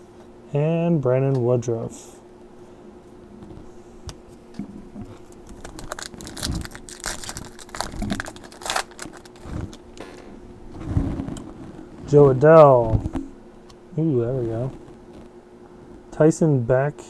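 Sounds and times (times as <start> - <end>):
cards rustling and clicking: 5.1 - 9.8
foil wrapper crinkling and tearing: 5.2 - 9.8.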